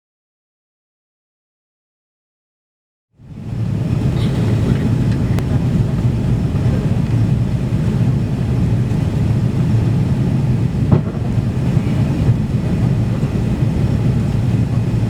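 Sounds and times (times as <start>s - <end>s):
airliner cabin rumble: 3.2s - 15.0s
short thump: 10.9s - 11.3s.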